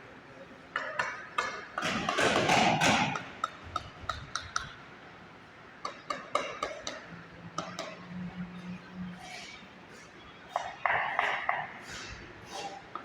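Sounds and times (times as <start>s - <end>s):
tool tapping on ceramic tile: 2.4s - 4.7s.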